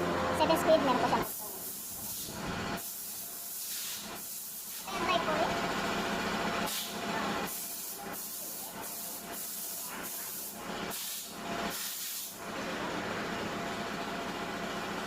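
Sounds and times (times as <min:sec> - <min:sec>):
air blow gun hissing bursts: 0:01.2 - 0:05.0, 0:06.6 - 0:12.4.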